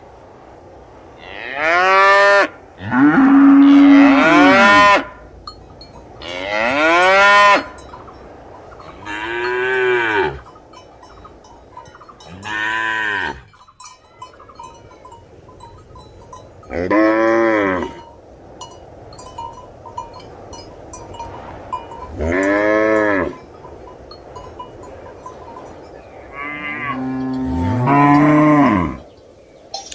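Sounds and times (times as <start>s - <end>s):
cattle mooing: 1.2s - 5.2s, 6.2s - 7.8s, 8.8s - 10.5s, 12.1s - 13.6s, 16.7s - 18.0s, 22.2s - 23.4s, 26.2s - 29.1s.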